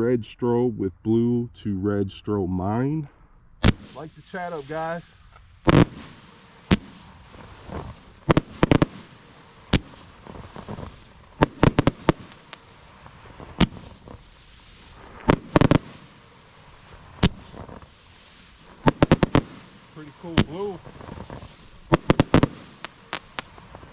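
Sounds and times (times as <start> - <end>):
fireworks bangs: 3.6 - 23.9
fireworks hissing: 3.6 - 23.9.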